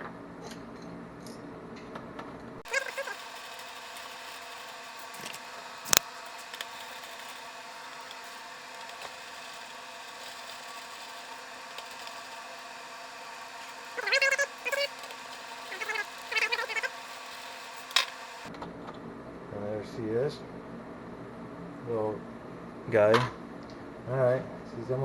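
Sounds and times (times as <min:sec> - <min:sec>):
faint hum: 0:00.0 - 0:25.0
warbling pitched calls: 0:02.7 - 0:18.5.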